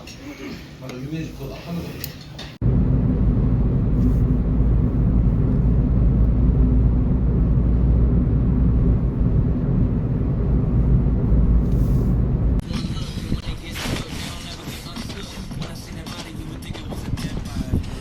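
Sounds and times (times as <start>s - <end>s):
engine running steadily: 2.6s - 12.6s.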